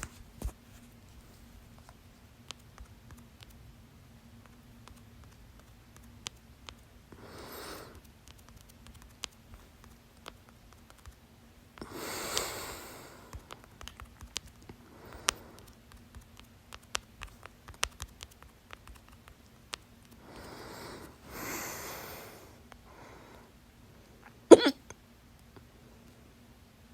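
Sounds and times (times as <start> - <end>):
person breathing: 7.1 - 8.0, 11.8 - 13.5, 14.8 - 15.7, 20.2 - 23.6
person hiccuping: 24.5 - 24.9.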